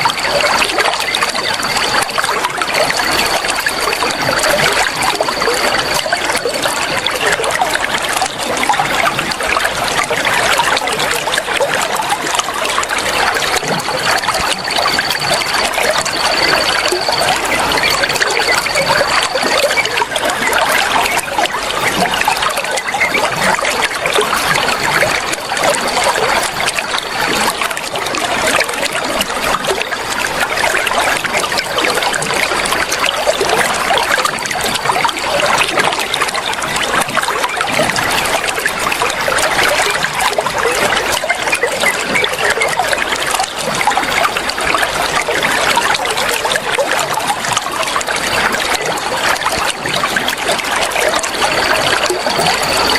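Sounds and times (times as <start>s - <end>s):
flowing water splashing: 0.0s - 52.9s.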